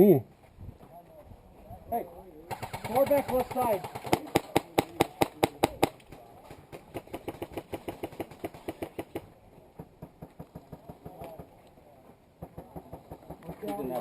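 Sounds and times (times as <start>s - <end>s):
airsoft guns firing: 2.5s - 6.0s.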